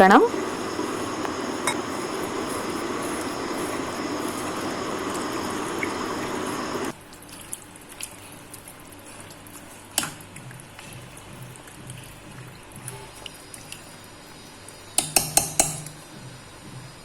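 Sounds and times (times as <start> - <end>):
water pouring: 0.3 - 8.4.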